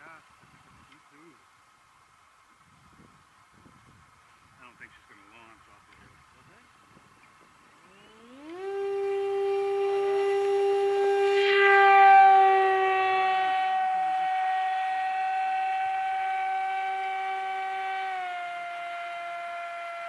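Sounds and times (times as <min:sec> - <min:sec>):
model airplane engine: 0:04.6 - 0:20.0.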